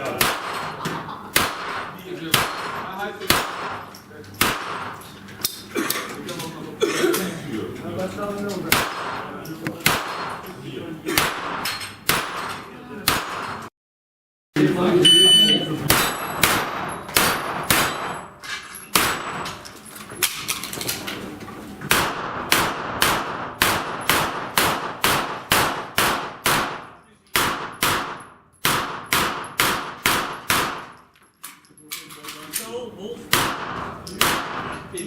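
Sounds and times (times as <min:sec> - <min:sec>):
gunshots: 0:00.0 - 0:05.0, 0:08.7 - 0:10.4, 0:11.1 - 0:13.7, 0:15.9 - 0:18.3, 0:19.0 - 0:19.5, 0:21.9 - 0:31.0, 0:33.3 - 0:34.8
bullets clanging on steel: 0:00.1 - 0:06.5, 0:11.2 - 0:13.7, 0:15.9 - 0:21.1, 0:26.8 - 0:32.7.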